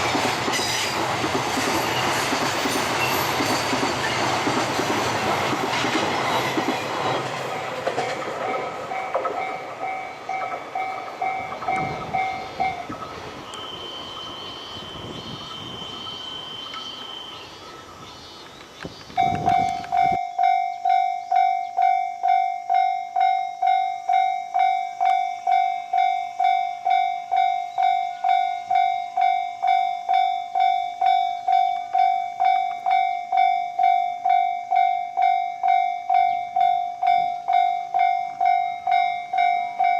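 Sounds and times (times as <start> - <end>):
train passing: 0.0 - 39.9
level crossing alarm dinging: 7.6 - 17.4.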